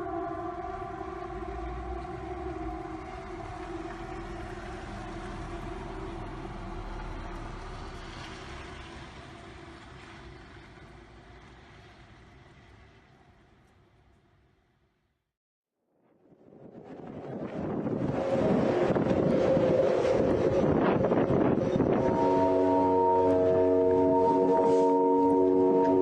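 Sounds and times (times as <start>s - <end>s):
droning hum: 0.0s - 8.0s
rushing rumble: 0.0s - 13.5s, 16.1s - 26.0s.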